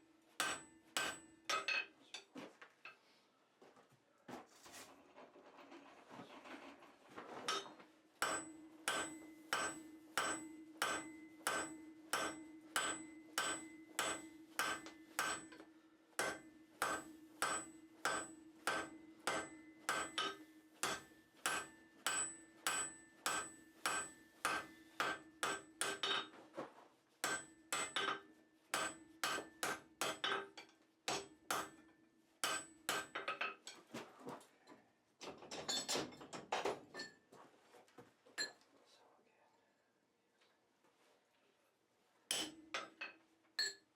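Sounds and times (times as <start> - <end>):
hammer striking steel on anvil: 0.4 - 1.9, 8.2 - 26.3, 27.2 - 31.8, 32.4 - 33.3, 42.3 - 43.8
anvil ringing: 8.2 - 15.5, 16.2 - 26.0.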